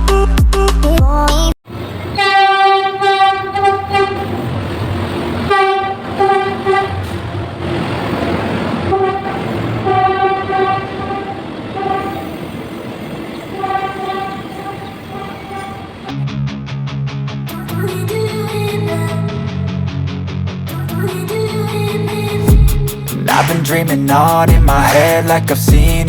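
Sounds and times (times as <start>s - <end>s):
train horn blasts: 1.7s - 7.7s, 8.8s - 12.6s, 13.3s - 16.2s
train rumbling: 1.7s - 16.2s.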